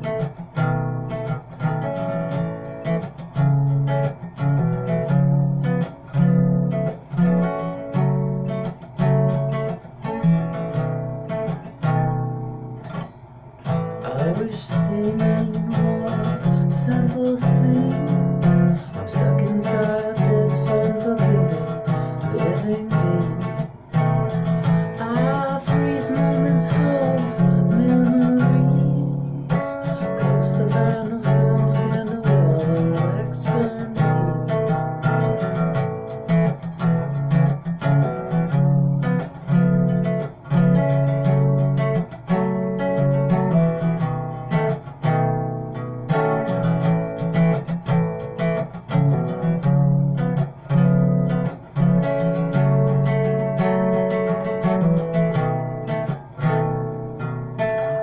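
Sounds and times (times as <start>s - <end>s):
strummed guitar chords: 0.0s - 58.0s.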